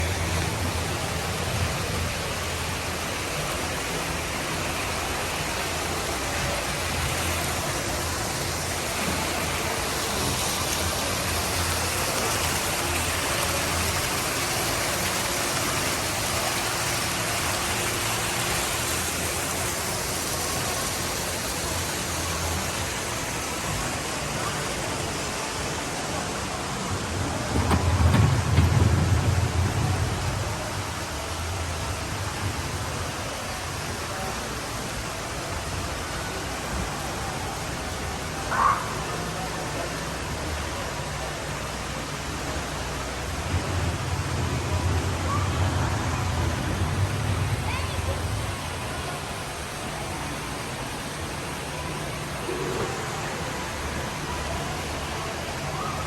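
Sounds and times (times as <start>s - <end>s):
water falling and splashing: 0.0s - 56.0s
low rumble: 26.8s - 32.4s, 42.8s - 49.4s.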